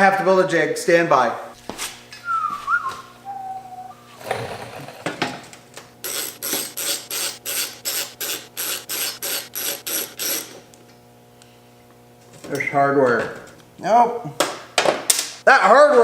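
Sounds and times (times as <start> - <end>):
filing or sawing scrape: 6.0 - 10.6
hand tool strokes on metal: 6.0 - 10.6.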